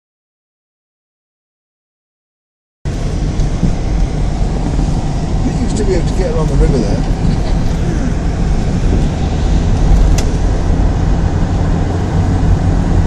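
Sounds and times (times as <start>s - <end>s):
car engine and road noise: 2.9s - 13.0s.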